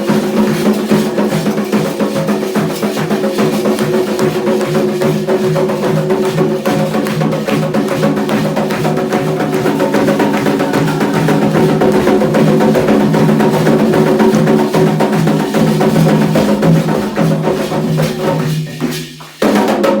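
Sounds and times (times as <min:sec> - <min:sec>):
fast drumming: 0:00.0 - 0:20.0
steady pitched drone: 0:09.2 - 0:14.5.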